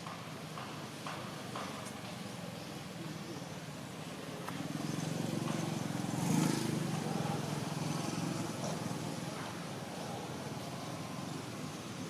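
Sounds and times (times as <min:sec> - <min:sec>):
vehicle engine passing by: 0:04.6 - 0:12.0.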